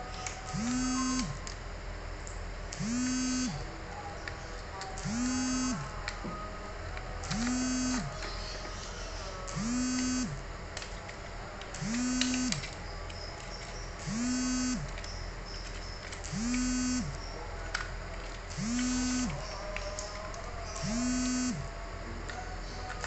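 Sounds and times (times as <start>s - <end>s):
small electric motor whirring: 0.6s - 1.3s, 2.8s - 3.6s, 5.0s - 5.9s, 7.3s - 8.1s, 9.5s - 10.4s, 11.8s - 12.7s, 14.0s - 14.9s, 16.2s - 17.2s, 18.5s - 19.4s, 20.8s - 21.7s.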